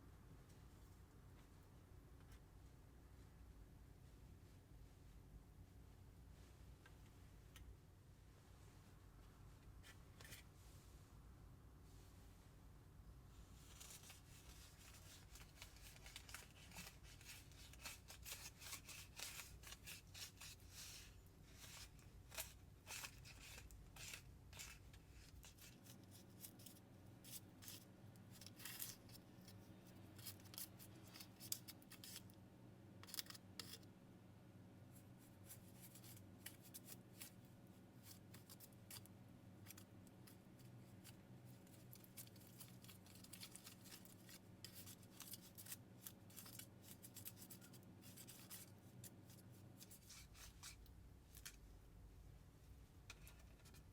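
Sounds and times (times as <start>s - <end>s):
plastic trays and packets rustling: 13.6s - 29.2s, 39.6s - 51.6s.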